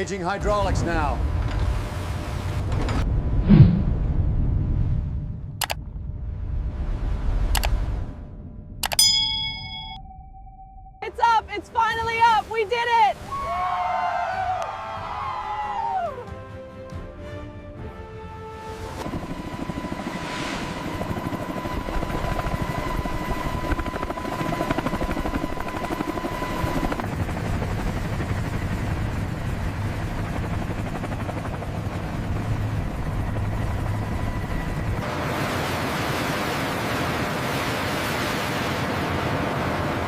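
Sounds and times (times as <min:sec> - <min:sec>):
thin high whine: 0:08.9 - 0:11.1.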